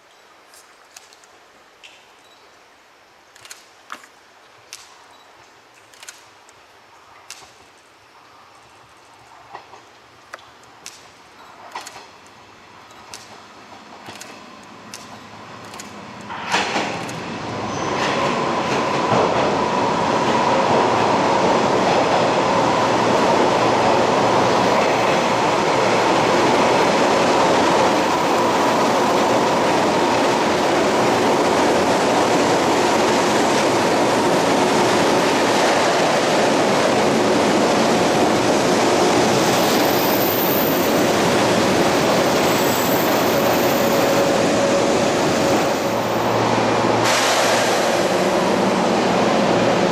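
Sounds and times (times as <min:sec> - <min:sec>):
electric train running past: 0:12.7 - 0:49.9.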